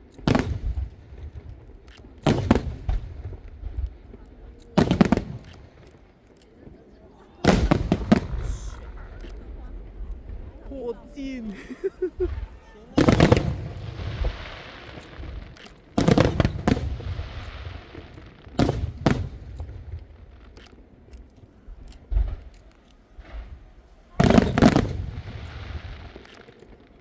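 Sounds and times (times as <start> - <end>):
faint scattered pops: 0.0 - 6.7, 7.4 - 10.5, 12.0 - 23.4
fireworks booming overhead: 0.0 - 27.0.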